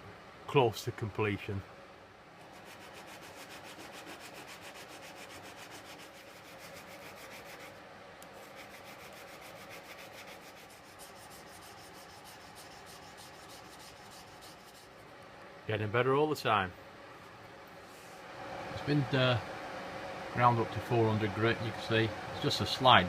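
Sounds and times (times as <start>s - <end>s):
chisel rubbing on sharpening stone: 2.5s - 7.7s, 8.4s - 14.9s.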